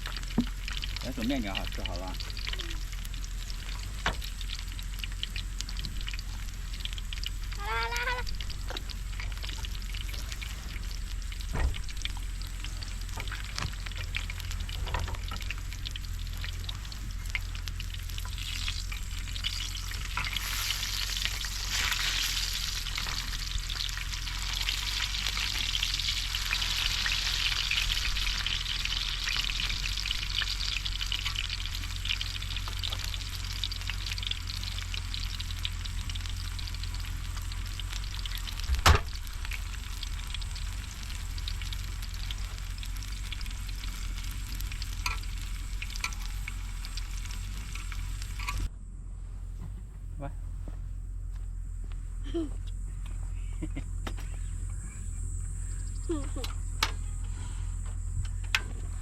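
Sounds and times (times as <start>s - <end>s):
food sizzling in a pan: 0.0s - 48.7s.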